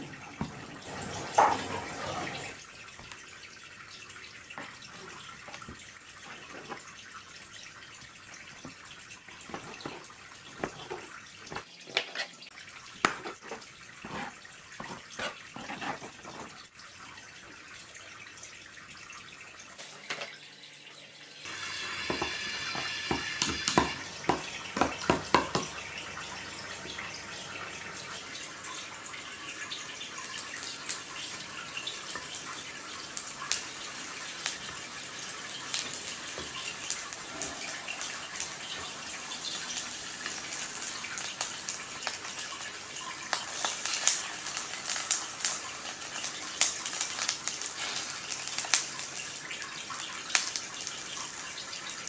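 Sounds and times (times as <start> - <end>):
water splashing in a sink: 0.0 - 52.0
tap running: 11.6 - 13.2, 19.8 - 27.1.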